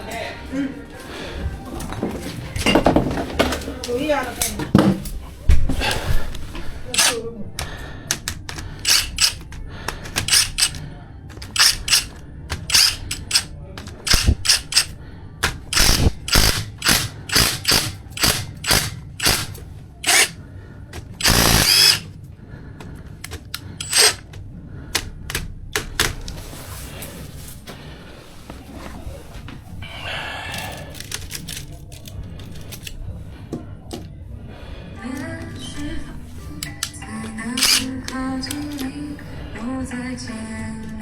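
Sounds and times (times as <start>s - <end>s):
harsh burst: 15.7s - 20.4s, 21.1s - 22.1s.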